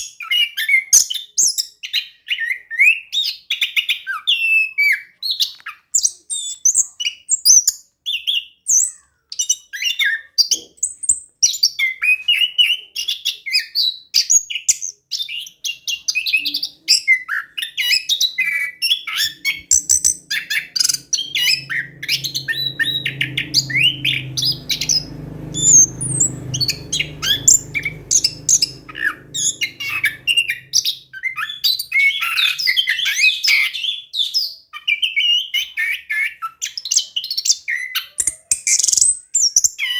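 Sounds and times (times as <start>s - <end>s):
thrush singing: 18.9s - 31.9s
low hum: 19.1s - 31.4s.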